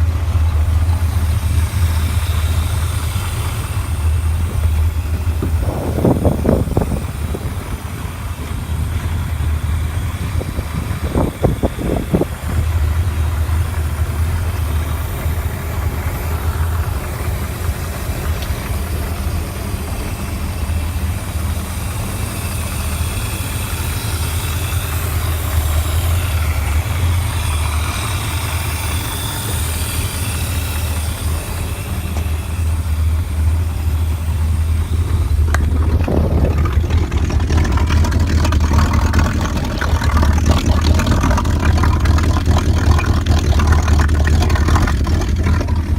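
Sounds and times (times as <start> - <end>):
boat engine droning: 0.0 - 45.9.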